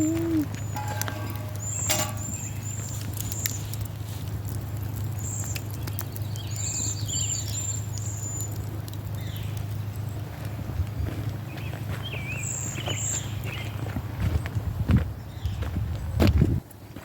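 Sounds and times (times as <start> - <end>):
small birds high calls: 0.0 - 4.0, 4.9 - 10.4, 11.4 - 13.9
steady low hum: 0.0 - 12.0.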